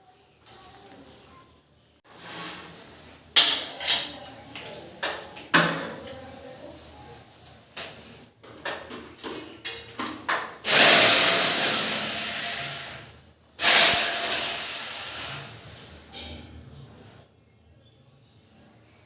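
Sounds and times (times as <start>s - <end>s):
power drill running: 10.6s - 15.6s.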